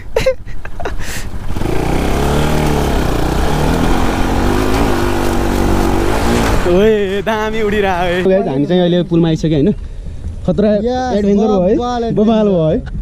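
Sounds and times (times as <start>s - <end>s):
motorcycle engine accelerating: 0.8s - 8.3s.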